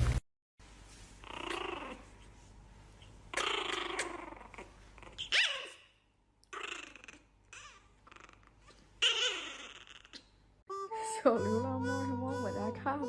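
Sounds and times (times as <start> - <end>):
animal high cry: 3.3 - 10.3.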